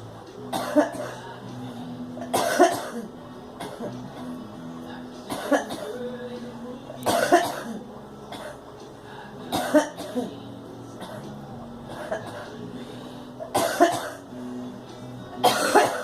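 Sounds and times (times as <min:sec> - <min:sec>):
girl coughing: 0:00.5 - 0:01.2, 0:02.3 - 0:03.9, 0:05.3 - 0:06.0, 0:07.1 - 0:08.6, 0:09.5 - 0:10.3, 0:13.5 - 0:14.2, 0:15.4 - 0:16.0.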